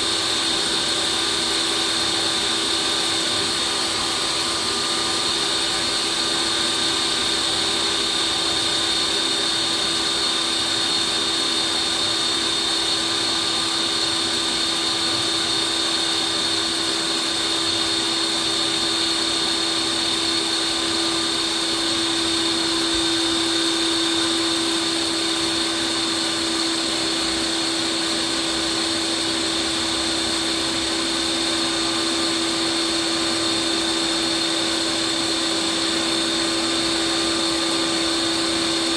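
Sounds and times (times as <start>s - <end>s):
ice cream maker motor whine: 0.0s - 38.9s.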